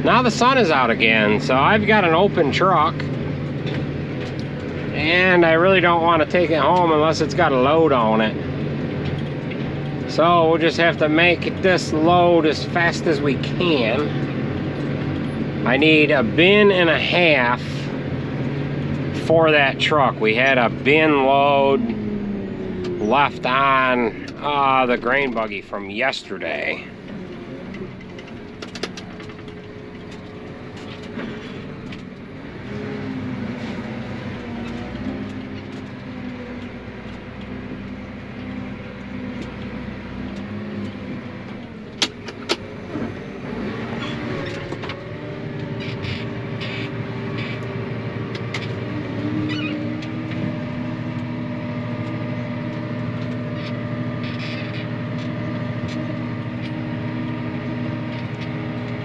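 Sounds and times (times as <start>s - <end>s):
vehicle engine running: 0.0s - 59.0s.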